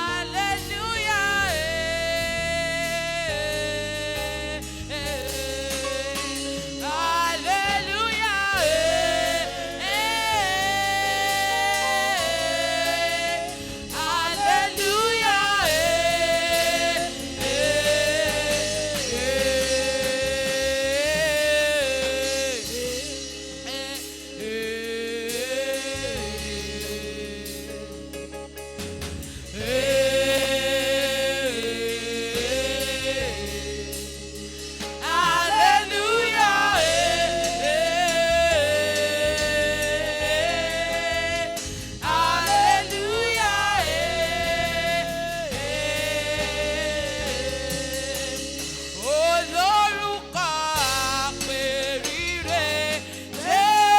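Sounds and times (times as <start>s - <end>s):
band with bass line: 0.0s - 53.9s
gospel choir singing: 0.0s - 53.9s.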